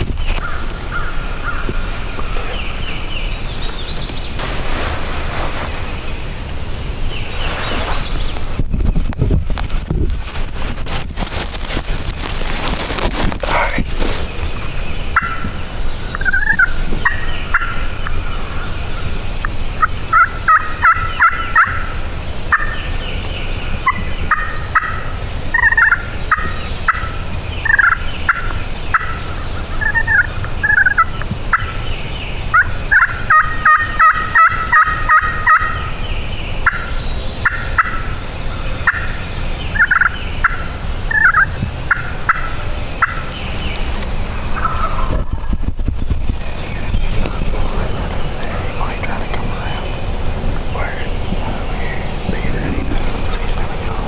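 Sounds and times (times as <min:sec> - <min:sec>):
turkeys gobbling: 0:14.4 - 0:22.9, 0:23.8 - 0:31.9, 0:32.5 - 0:36.0, 0:36.6 - 0:45.4, 0:47.1 - 0:54.0.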